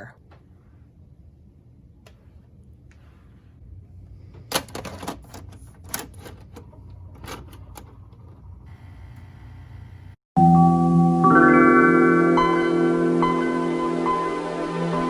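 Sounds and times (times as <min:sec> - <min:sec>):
low steady hum: 0:00.0 - 0:10.2.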